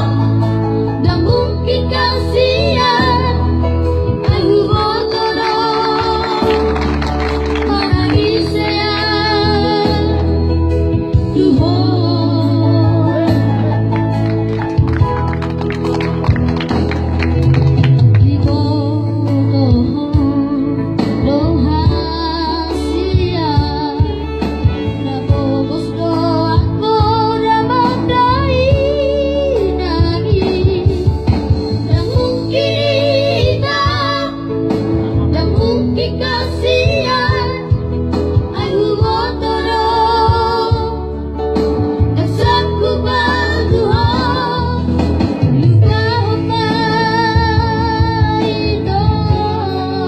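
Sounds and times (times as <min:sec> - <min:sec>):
instrumental backing: 0:00.0 - 0:50.0
child singing: 0:01.1 - 0:03.5, 0:32.0 - 0:34.5, 0:35.4 - 0:37.8, 0:38.5 - 0:41.0, 0:42.2 - 0:44.8.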